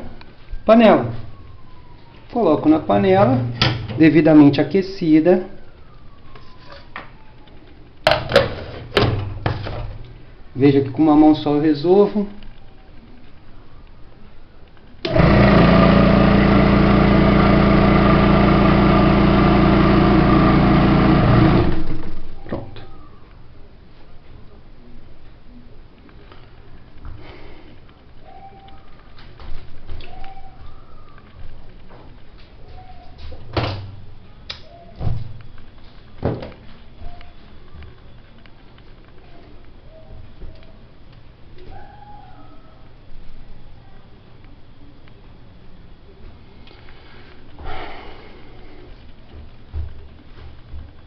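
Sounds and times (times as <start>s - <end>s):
machine motor humming and whirring: 15.0s - 22.3s.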